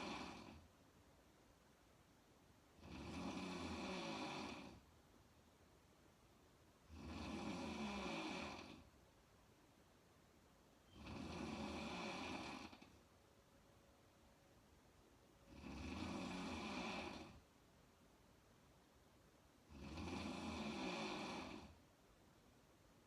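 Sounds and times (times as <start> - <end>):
woman snoring: 0.0 - 0.6, 2.8 - 4.8, 6.9 - 8.9, 10.9 - 13.0, 15.5 - 17.4, 19.7 - 21.8.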